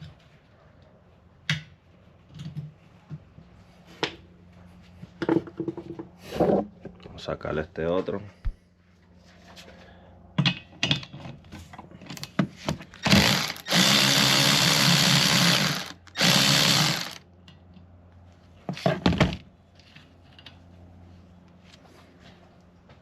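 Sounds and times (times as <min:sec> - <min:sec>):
handheld power tool running: 0:13.0 - 0:17.2.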